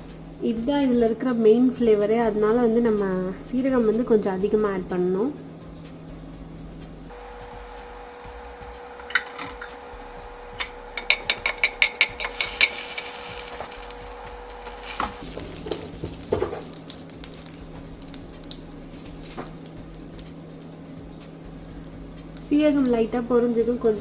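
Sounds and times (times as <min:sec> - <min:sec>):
seeds sizzling in hot oil: 0:10.0 - 0:24.0
metal spoon clinking on pan: 0:11.0 - 0:14.1.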